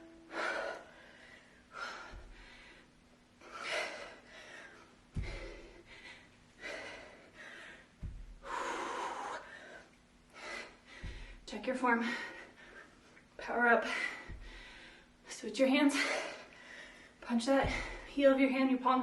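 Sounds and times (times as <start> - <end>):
woman breathing hard: 0.0 - 15.2, 15.9 - 18.2
dull low thuds: 5.1 - 6.0, 7.9 - 8.8, 10.9 - 11.6, 14.2 - 14.9, 17.5 - 18.3.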